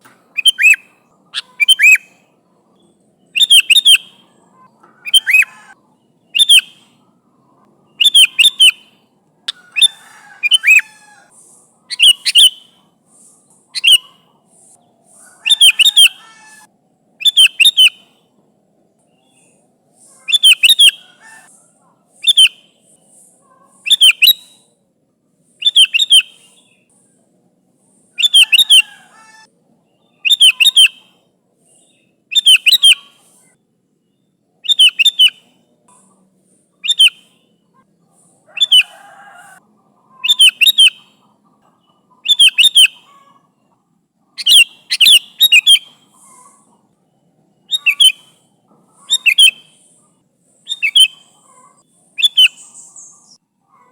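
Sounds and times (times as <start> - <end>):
bulbul singing: 0.0 - 16.5, 17.2 - 18.2, 19.1 - 24.7, 25.6 - 27.1, 29.9 - 33.5, 34.6 - 36.1, 36.8 - 37.8, 40.2 - 41.2, 41.8 - 43.1, 44.4 - 46.7, 47.6 - 53.4.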